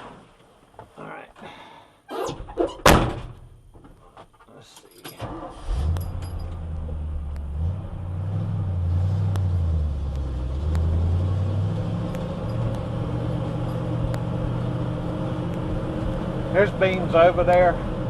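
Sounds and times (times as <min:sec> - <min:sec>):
truck engine starting and running: 0:05.2 - 0:18.0.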